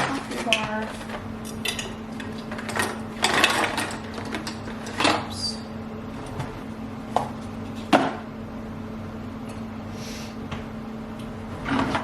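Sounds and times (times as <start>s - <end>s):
dishes and utensils clattering: 0.0s - 5.2s
low appliance hum: 0.0s - 12.0s.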